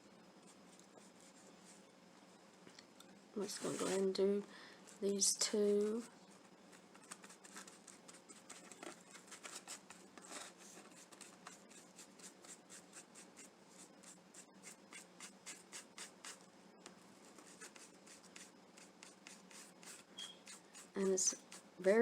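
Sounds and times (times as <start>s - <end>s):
paintbrush strokes swishing: 3.5s - 4.1s.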